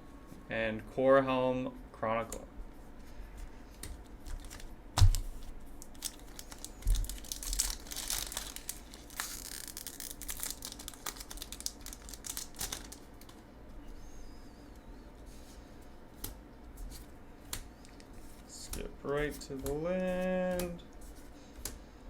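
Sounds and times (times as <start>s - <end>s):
cards clicking and rustling: 3.8s - 13.4s
foil wrapper crinkling and tearing: 4.2s - 13.4s.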